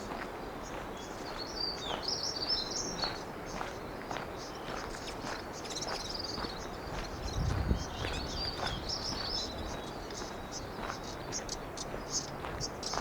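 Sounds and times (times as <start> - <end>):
steady outdoor noise: 0.0 - 13.0
small birds chirping: 0.6 - 13.0
wind buffeting microphone: 6.4 - 13.0.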